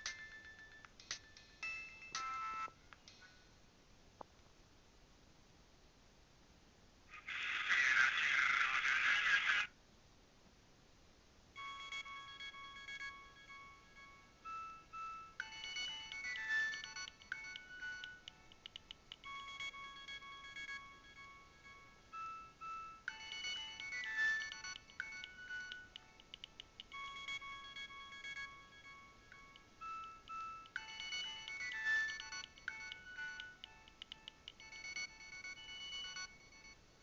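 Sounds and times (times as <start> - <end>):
synthesized phone ringtone melody: 0.0 - 2.7, 11.6 - 37.0.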